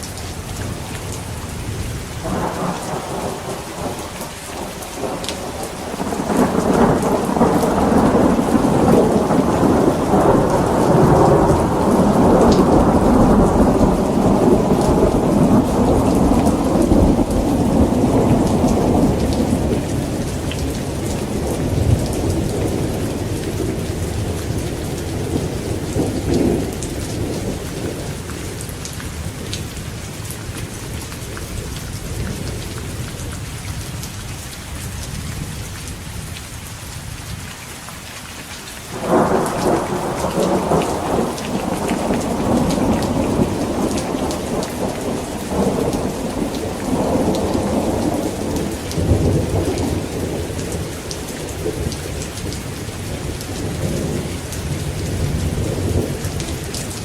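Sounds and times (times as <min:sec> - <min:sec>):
heavy rain: 0:00.0 - 0:57.0
low thunder rumble: 0:00.6 - 0:29.6, 0:38.9 - 0:57.0
loud thunderclap: 0:02.2 - 0:28.0, 0:38.9 - 0:52.6.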